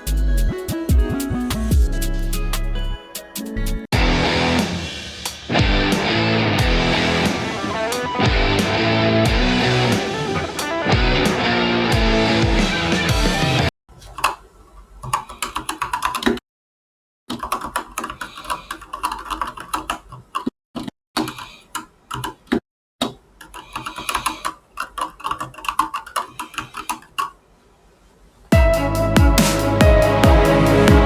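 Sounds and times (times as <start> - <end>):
mechanical keyboard keys clattering: 23.5 - 27.2.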